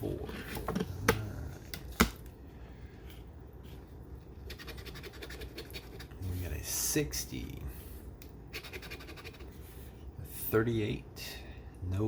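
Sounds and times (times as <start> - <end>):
scratching lottery ticket: 4.4 - 6.2, 8.5 - 9.6.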